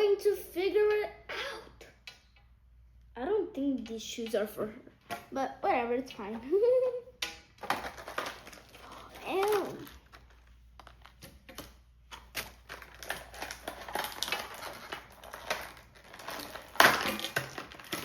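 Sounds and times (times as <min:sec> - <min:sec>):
packaging rustling: 0:07.6 - 0:18.0.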